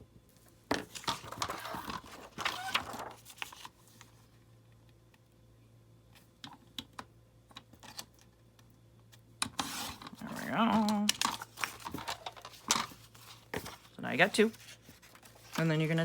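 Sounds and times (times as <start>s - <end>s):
paper being handled: 0.9s - 4.1s, 9.6s - 16.0s.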